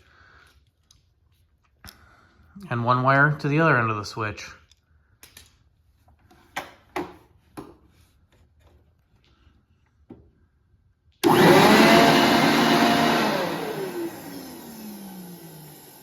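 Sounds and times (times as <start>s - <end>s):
blower motor whine: 11.2s - 16.0s.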